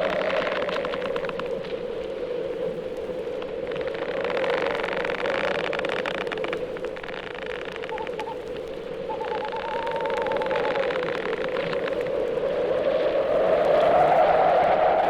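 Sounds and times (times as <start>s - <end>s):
vinyl crackle and hiss: 0.0s - 15.0s
faint wavering whistle: 7.9s - 11.1s.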